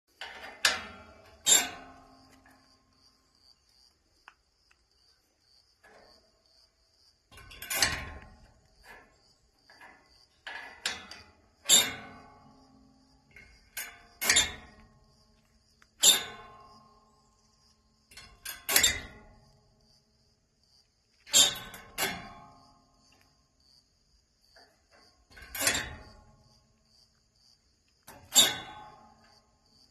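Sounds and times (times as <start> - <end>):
metal gate latch clacking: 0.2 - 2.7, 5.8 - 6.3, 7.3 - 17.2, 18.1 - 19.8, 21.2 - 23.3, 24.6 - 26.8, 28.0 - 29.7.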